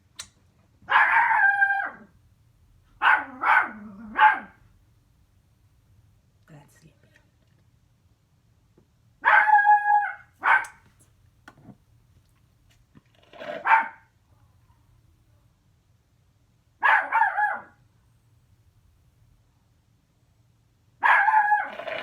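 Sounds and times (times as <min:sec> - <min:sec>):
dog barking: 0:00.9 - 0:02.1, 0:03.0 - 0:04.6, 0:09.2 - 0:10.8, 0:13.5 - 0:14.1, 0:16.8 - 0:17.8, 0:21.0 - 0:22.0.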